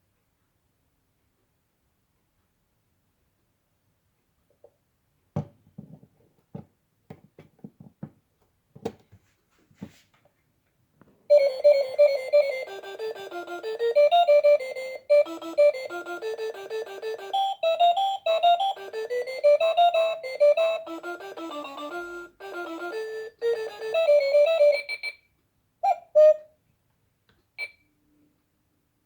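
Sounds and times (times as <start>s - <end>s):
electronic beeping alarm melody: 11.3s - 25.2s.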